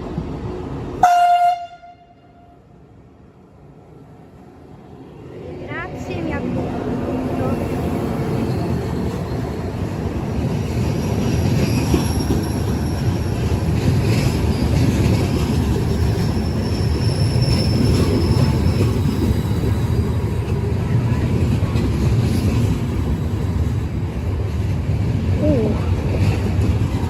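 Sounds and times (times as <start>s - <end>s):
train wheels rumbling on rails: 4.7s - 27.0s
high-pitched wheel squeal: 16.2s - 19.1s.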